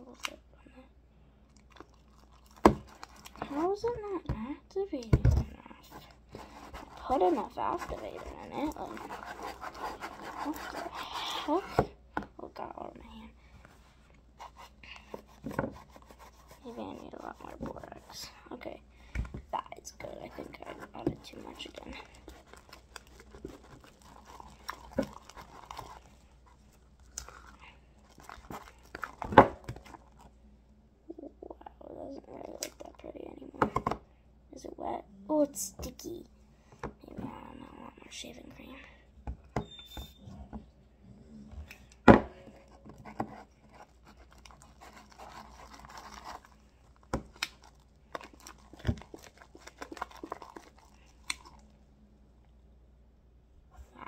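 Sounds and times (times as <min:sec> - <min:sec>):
slime squelching: 0:01.5 - 0:04.3, 0:05.8 - 0:12.8, 0:14.2 - 0:30.4, 0:42.4 - 0:51.8.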